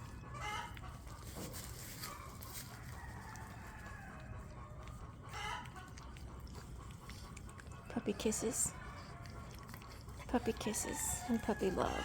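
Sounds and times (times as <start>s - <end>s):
faint rooster crowing: 2.0s - 5.6s, 10.8s - 12.0s.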